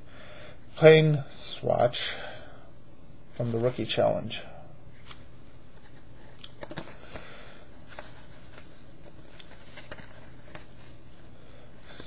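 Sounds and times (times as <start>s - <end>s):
trading cards flipping: 5.0s - 11.0s.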